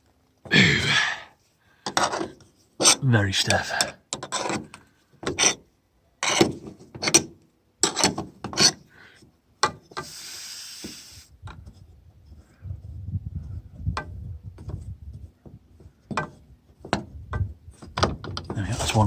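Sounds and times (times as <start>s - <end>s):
metal scraping and creaking: 1.9s - 5.6s
steady hiss: 10.0s - 11.4s.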